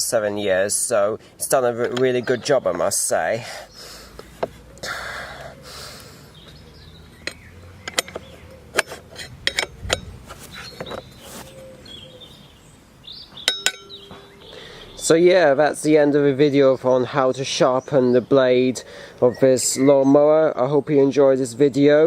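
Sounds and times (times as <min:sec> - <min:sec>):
birds chirping faintly: 0:00.0 - 0:22.0
handling clicks and knocks: 0:07.2 - 0:11.6
short rustle: 0:09.8 - 0:12.5.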